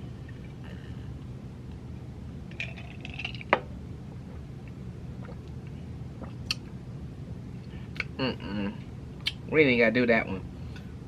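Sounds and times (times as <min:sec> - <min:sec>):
steady low hum: 0:00.0 - 0:11.0
person sipping and gulping: 0:05.1 - 0:05.6.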